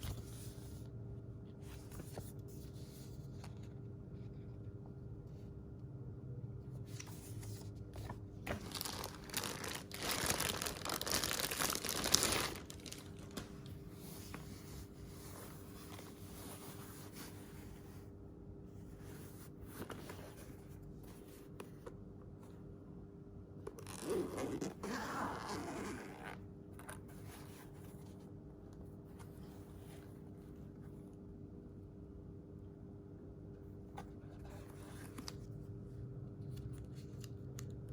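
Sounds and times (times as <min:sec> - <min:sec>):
faint steady hum: 0:00.0 - 0:37.9
packaging being torn and crinkled: 0:08.6 - 0:13.4.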